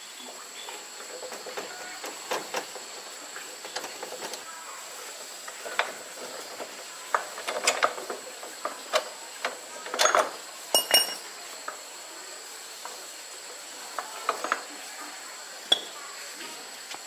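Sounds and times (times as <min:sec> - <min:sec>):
metal tools clinking: 0:09.9 - 0:11.3
ringing metallic ping: 0:10.8 - 0:11.2.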